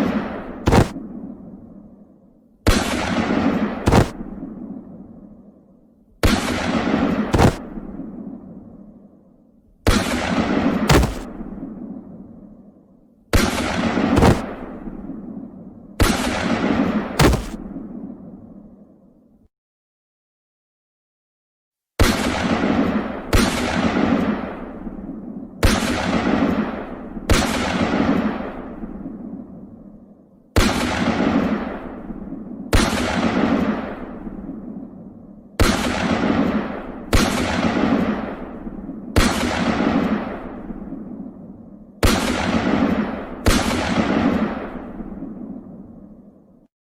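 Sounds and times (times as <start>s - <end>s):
gunshots and booms: 0.0s - 1.4s, 2.6s - 5.2s, 6.2s - 8.6s, 9.8s - 12.4s, 13.3s - 15.4s, 16.0s - 18.1s, 22.0s - 29.6s, 30.6s - 46.1s
gunshots or explosions: 0.7s - 1.0s, 3.9s - 4.3s, 7.3s - 7.7s, 10.9s - 11.4s, 14.2s - 14.5s, 17.2s - 17.6s.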